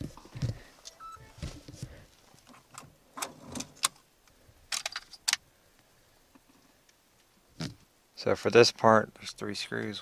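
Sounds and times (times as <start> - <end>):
plastic parts clicking and knocking: 4.7 - 5.4.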